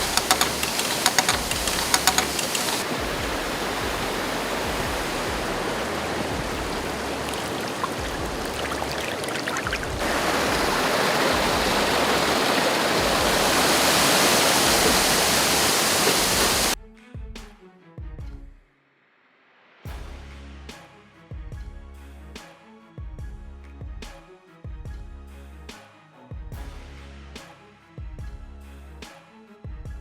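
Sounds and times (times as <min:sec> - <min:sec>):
rushing water: 0:00.0 - 0:16.8.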